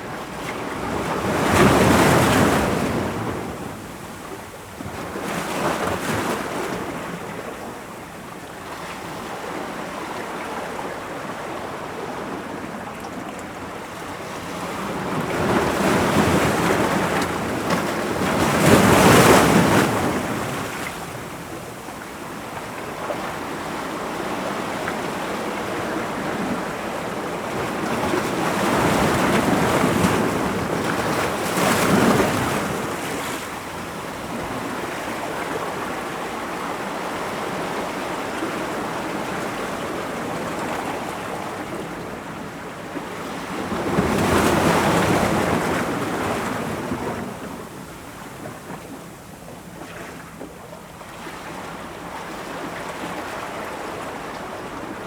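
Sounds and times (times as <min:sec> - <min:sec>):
ocean waves breaking on rocks: 0:00.2 - 0:03.8, 0:14.6 - 0:21.4, 0:22.5 - 0:42.3, 0:42.9 - 0:48.8.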